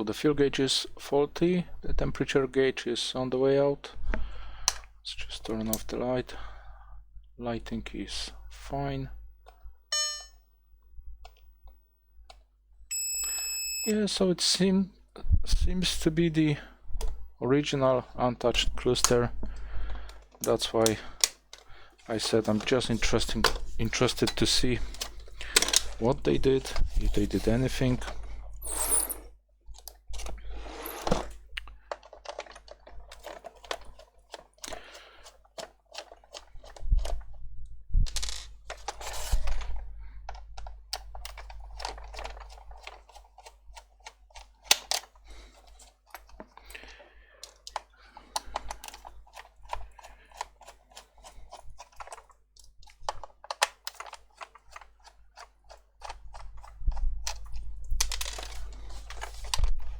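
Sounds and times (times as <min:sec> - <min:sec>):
plastic clicks and scraping: 0:18.6 - 0:28.2, 0:29.7 - 0:37.3, 0:38.1 - 0:59.9.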